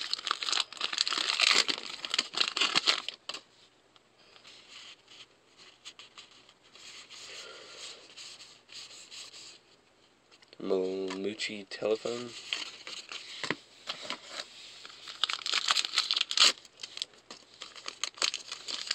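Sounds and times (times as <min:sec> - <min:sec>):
wrapper tearing and crinkling: 0:00.0 - 0:03.4, 0:14.1 - 0:18.9
cards rustling: 0:00.0 - 0:03.5, 0:10.3 - 0:18.9.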